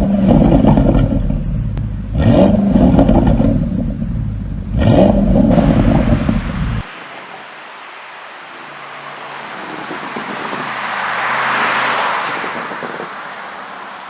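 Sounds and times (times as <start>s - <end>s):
car passing by: 5.5s - 14.0s.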